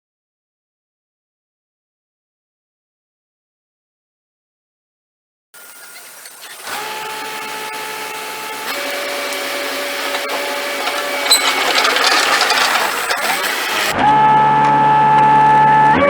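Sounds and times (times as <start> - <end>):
steady tones: 5.6 - 14.0
track loader engine and hydraulics: 5.6 - 14.0.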